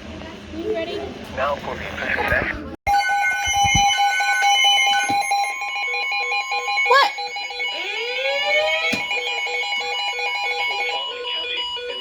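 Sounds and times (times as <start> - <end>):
rising electronic sweeps: 2.9 - 11.0
electronic alert beeps: 2.9 - 12.0.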